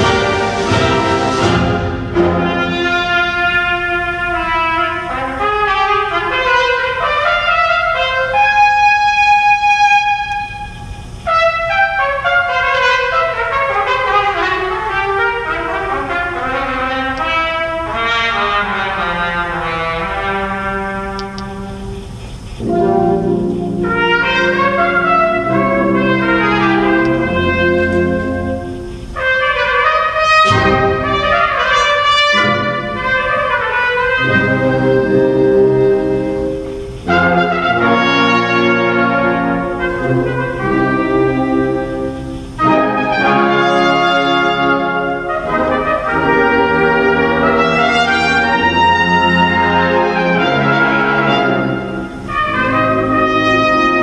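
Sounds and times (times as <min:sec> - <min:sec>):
concert wind band playing: 0:00.0 - 0:54.0
solo trumpet: 0:00.0 - 0:54.0.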